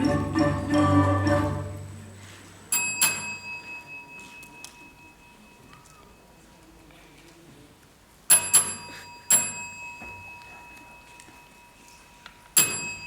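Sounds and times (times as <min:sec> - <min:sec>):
small bell ringing: 0:02.7 - 0:06.4, 0:08.3 - 0:13.0.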